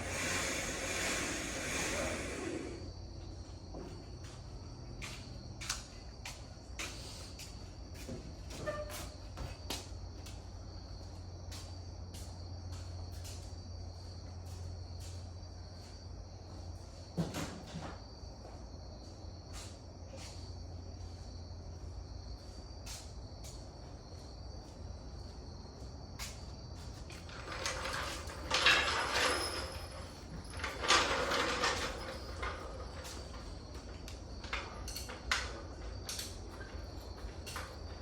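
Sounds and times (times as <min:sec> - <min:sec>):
noisy bursts: 0:00.0 - 0:02.9
crickets chirping: 0:00.0 - 0:38.0.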